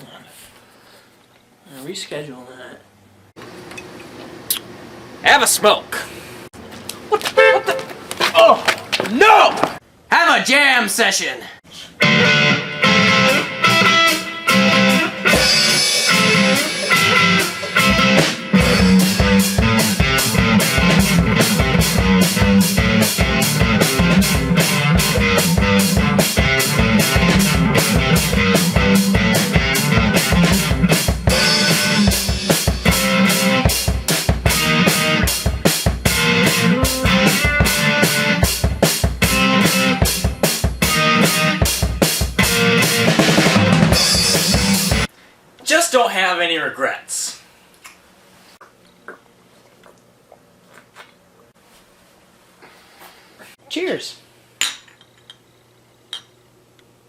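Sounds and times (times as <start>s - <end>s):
electric guitar: 11.8s - 45.1s
drum kit playing: 12.0s - 45.1s.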